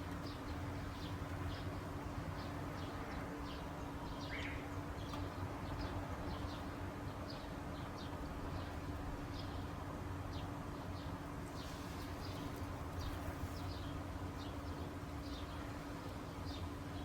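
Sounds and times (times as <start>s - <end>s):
background hiss: 0.0s - 17.0s
high-pitched bird calls: 4.2s - 4.7s.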